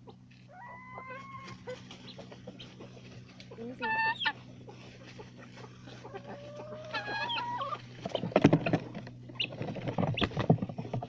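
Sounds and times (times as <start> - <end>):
chickens clucking: 0.0 - 11.0
chicken drawn-out call: 0.4 - 3.0, 3.7 - 8.4
rustling and scuffling: 1.3 - 3.6, 4.4 - 11.0.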